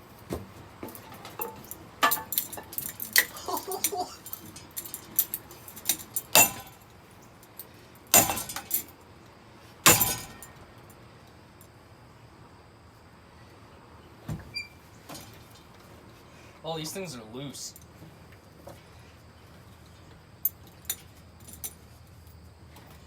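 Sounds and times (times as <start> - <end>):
clinking debris: 0.8 - 9.0, 9.9 - 10.6
bat smashing ceiling fan: 8.2 - 8.7, 9.9 - 10.5.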